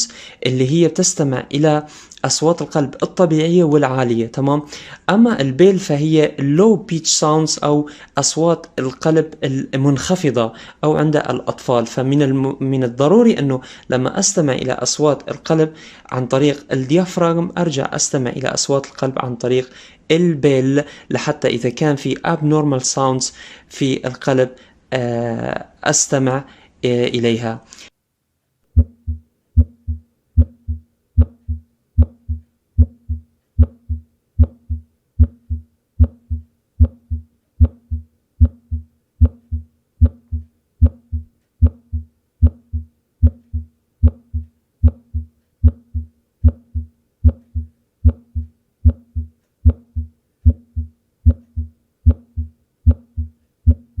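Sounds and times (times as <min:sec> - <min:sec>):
heartbeat lub-dub: 0:28.8 - 0:54.0.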